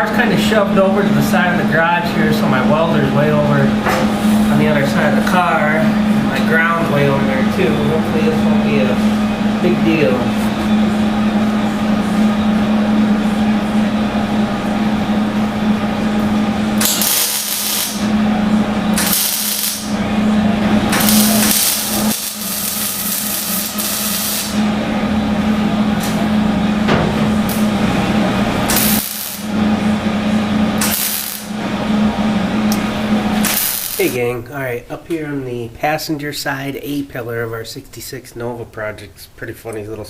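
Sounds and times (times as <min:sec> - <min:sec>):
welding arc sizzling: 0:00.0 - 0:34.4
steady low hum: 0:00.0 - 0:40.0.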